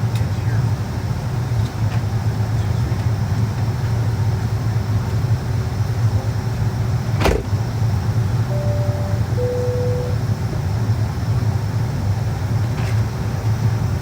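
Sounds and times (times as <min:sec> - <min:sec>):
airplane cabin hum: 0:08.2 - 0:14.0.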